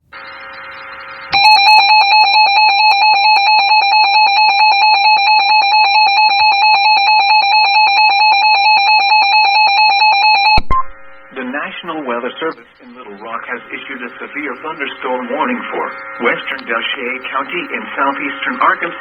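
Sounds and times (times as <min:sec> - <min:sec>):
harsh electronic alarm tone: 0:00.0 - 0:19.0.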